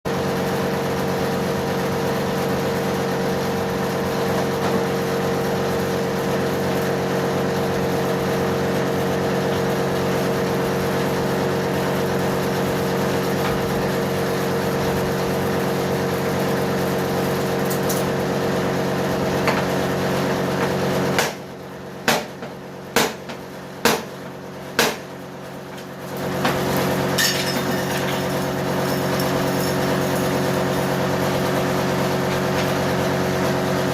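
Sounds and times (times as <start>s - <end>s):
sharp knocks: 22.1s - 24.1s.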